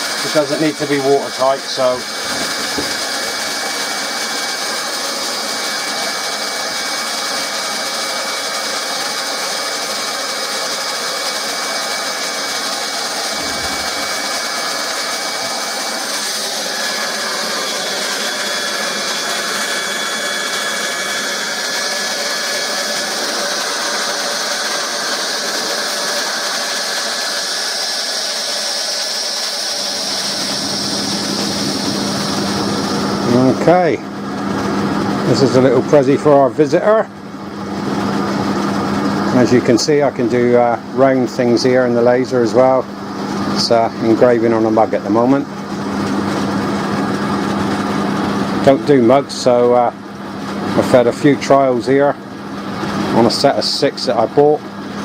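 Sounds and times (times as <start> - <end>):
hot-air welding gun hissing: 0.0 - 33.9.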